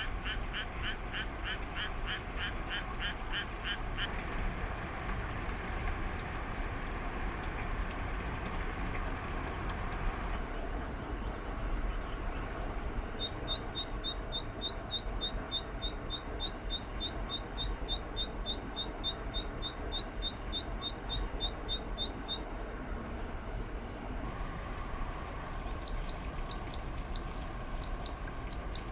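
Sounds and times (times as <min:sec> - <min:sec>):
rain: 0:00.0 - 0:10.4, 0:24.2 - 0:28.9.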